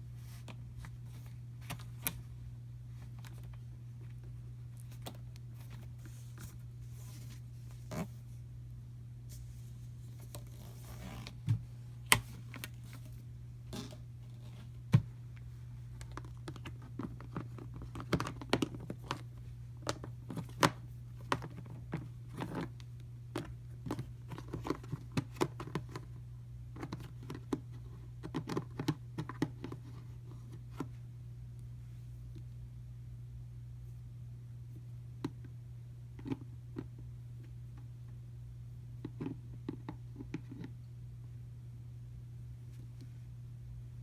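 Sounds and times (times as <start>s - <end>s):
steady low hum: 0.0s - 44.0s
clicks taps and scrapes of handling: 14.5s - 26.1s, 26.7s - 31.0s.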